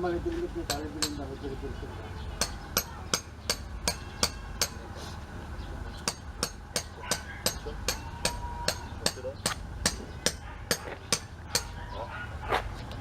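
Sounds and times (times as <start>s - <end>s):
hammer striking: 0.7s - 1.3s, 2.4s - 4.8s, 6.0s - 11.8s.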